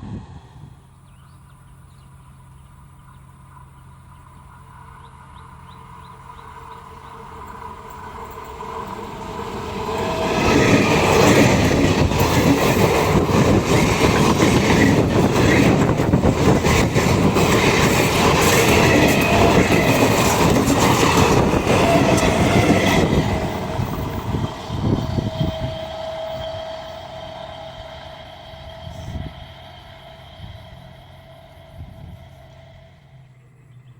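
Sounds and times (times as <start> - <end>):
train wheels clattering over rail joints: 7.0 - 26.6.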